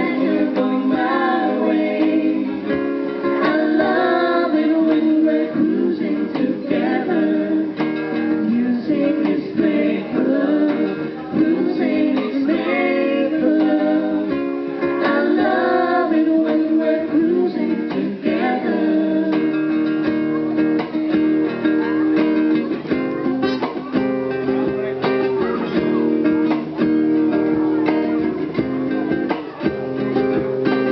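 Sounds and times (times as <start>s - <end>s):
person singing: 0.0s - 20.5s
strummed acoustic guitar: 0.0s - 30.9s.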